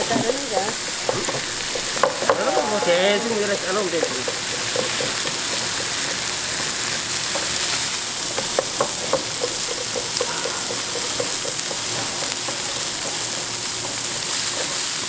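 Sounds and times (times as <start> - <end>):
fat spitting and popping: 0.0 - 2.5
pork sizzling on a griddle: 0.0 - 15.0.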